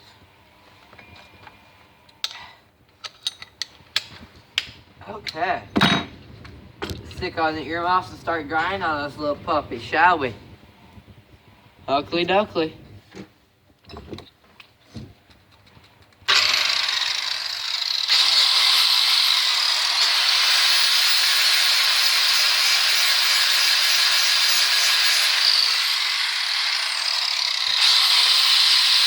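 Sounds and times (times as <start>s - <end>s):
angle grinder grinding steel: 16.3s - 29.0s.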